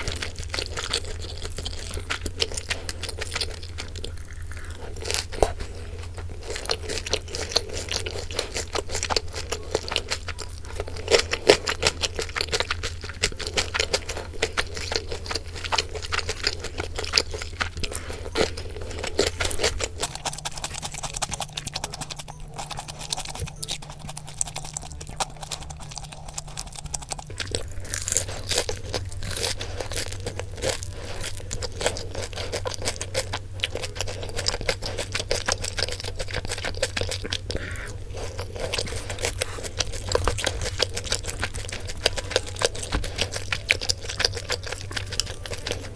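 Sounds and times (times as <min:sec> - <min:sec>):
crunchy food being chewed: 0:00.0 - 0:45.9
soft background music: 0:40.0 - 0:45.9.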